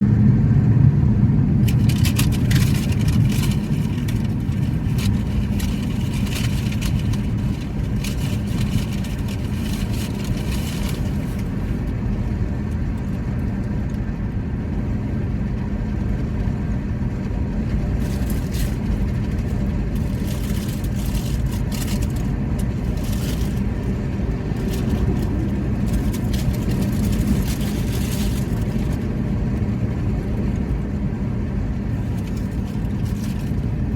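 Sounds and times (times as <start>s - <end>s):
low rumble: 0.0s - 33.9s
crackly clicking noise: 1.6s - 14.1s, 17.2s - 29.2s, 31.9s - 33.9s.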